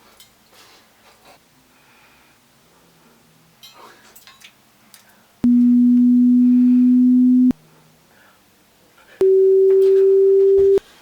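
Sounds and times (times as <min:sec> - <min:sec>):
hearing test beeps: 0:05.4 - 0:07.5.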